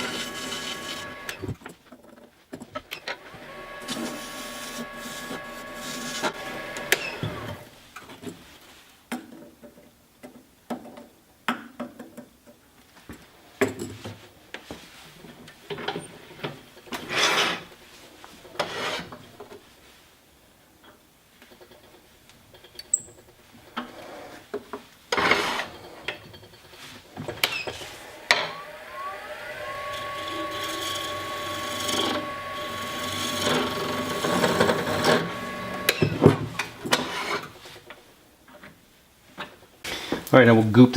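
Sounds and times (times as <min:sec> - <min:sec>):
small power tool motor whining: 0:00.0 - 0:01.6, 0:03.2 - 0:07.7, 0:27.6 - 0:37.4
wooden pieces scraping and knocking: 0:29.9 - 0:37.6.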